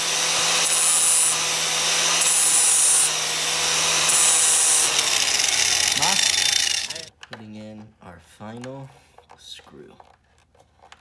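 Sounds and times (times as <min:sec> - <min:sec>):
electric power tool humming: 0:00.0 - 0:07.1
tool rasping against wood: 0:00.0 - 0:07.1.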